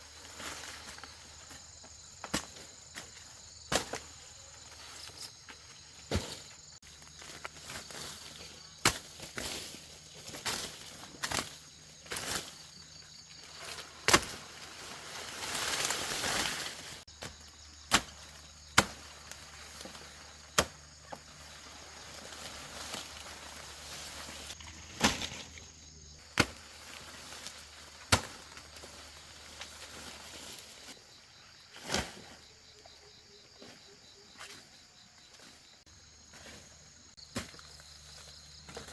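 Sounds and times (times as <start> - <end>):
blade chopping sugarcane: 8.8 - 9.5, 14.0 - 14.4, 17.2 - 20.8, 26.4 - 26.7, 28.1 - 28.6.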